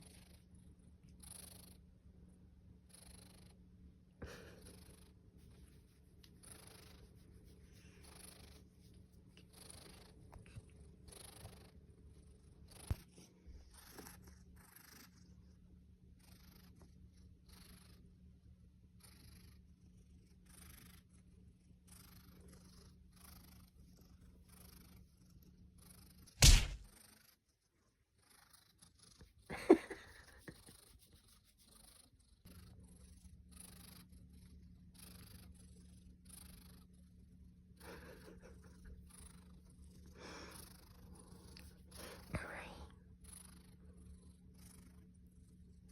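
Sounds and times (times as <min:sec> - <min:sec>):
cat purring: 0:00.0 - 0:26.4, 0:27.0 - 0:45.9
sharp loud click: 0:26.4 - 0:26.9.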